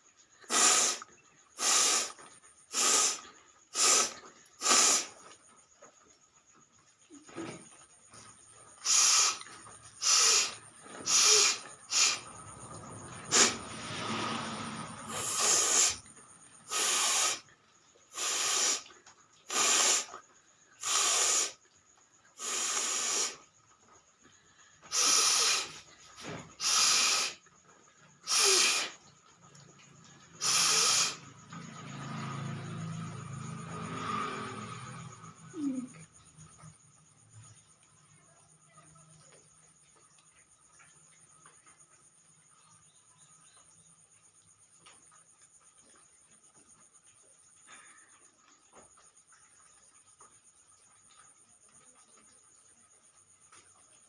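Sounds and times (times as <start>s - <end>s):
forceful breaths through nose: 0.4s - 5.4s, 8.8s - 17.5s, 18.1s - 18.9s, 19.5s - 20.2s, 20.8s - 21.6s, 22.4s - 23.5s, 24.5s - 27.5s, 28.2s - 29.0s, 30.4s - 31.3s.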